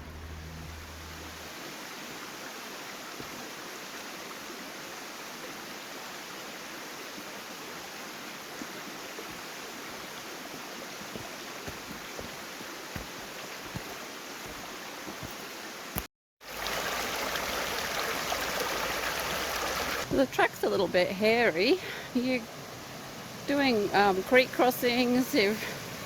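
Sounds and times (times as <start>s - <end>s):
truck rumble: 0.0s - 1.5s
creek water rushing: 0.0s - 26.0s.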